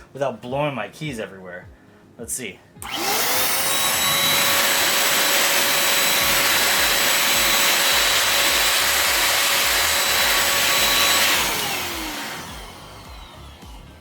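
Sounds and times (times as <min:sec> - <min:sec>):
air blower motor whine: 0:02.8 - 0:14.0.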